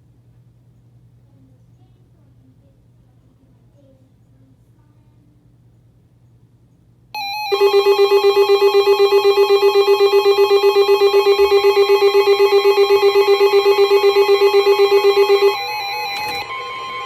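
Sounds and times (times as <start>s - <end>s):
faint hum: 0.0s - 17.0s
warbling electronic alert tone: 7.2s - 17.0s.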